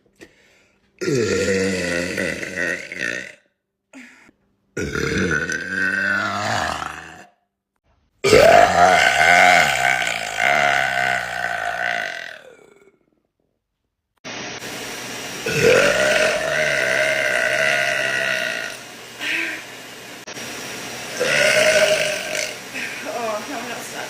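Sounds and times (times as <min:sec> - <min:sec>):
woman burping: 0:01.0 - 0:04.1, 0:04.8 - 0:07.4, 0:08.2 - 0:13.1, 0:15.5 - 0:19.6, 0:21.2 - 0:23.3.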